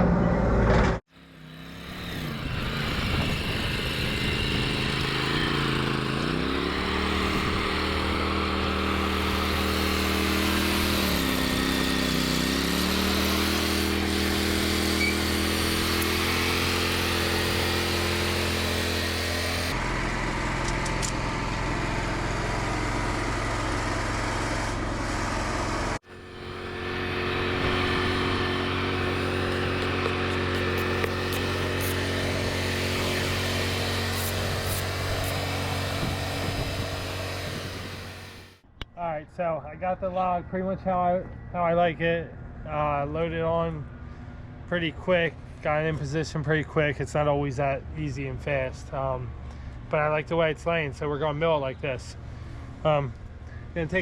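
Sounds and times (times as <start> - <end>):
heavy machinery engine revving: 0.0 - 38.6.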